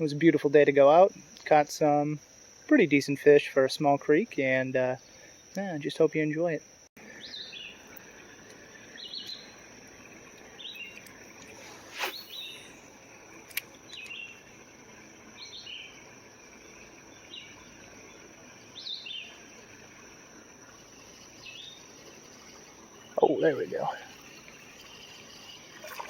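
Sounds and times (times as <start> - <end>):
high insect drone: 0.0 - 26.0
bird descending call: 11.8 - 12.8.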